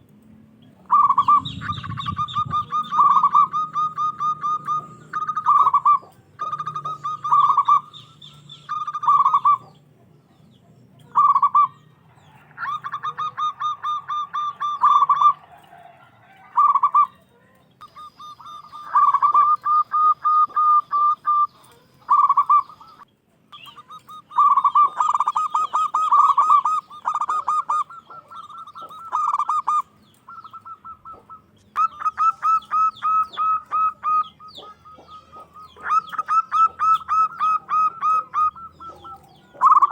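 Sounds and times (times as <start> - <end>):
dove cooing: 0.7 - 39.9.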